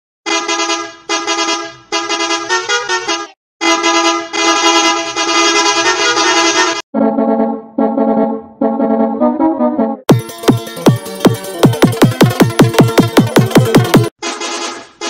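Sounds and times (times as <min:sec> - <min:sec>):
bus horn honking: 0:00.2 - 0:06.8, 0:14.2 - 0:15.0.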